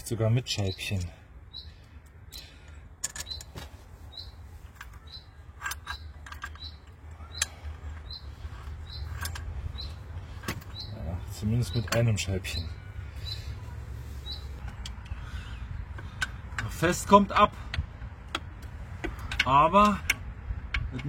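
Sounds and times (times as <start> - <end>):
bird chirping: 0.1 - 17.7
small metal parts clicking: 2.0 - 3.5, 4.7 - 10.8, 17.7 - 21.0.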